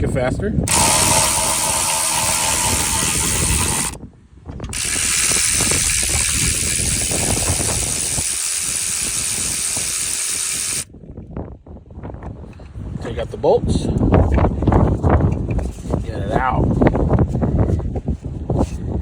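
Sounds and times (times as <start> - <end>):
cordless electric ratchet running: 0.7 - 4.0, 4.7 - 10.9.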